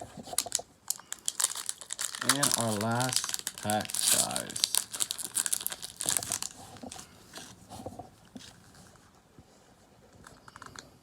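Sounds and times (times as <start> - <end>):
foil pack and cards rustling: 0.1 - 7.6.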